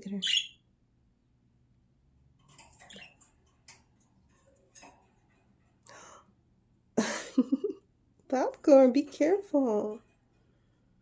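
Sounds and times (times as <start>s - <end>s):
birds tapping cage bars: 2.3s - 5.8s.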